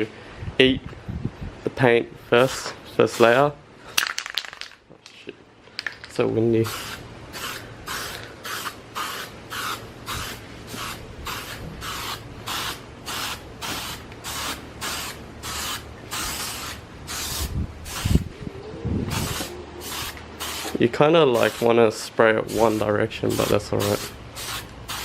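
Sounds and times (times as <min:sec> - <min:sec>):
wind rumbling on microphone: 0:00.3 - 0:01.7, 0:17.3 - 0:19.7
aerosol can spraying in bursts: 0:06.7 - 0:18.2, 0:19.1 - 0:20.8, 0:21.4 - 0:21.7, 0:22.5 - 0:25.0.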